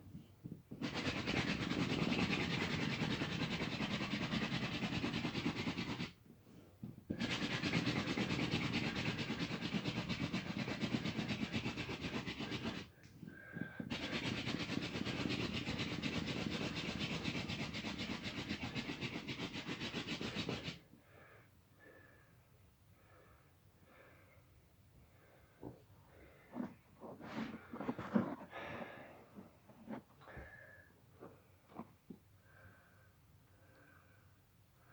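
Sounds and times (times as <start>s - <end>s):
faint breathing: 21.0s - 31.8s, 32.4s - 34.9s.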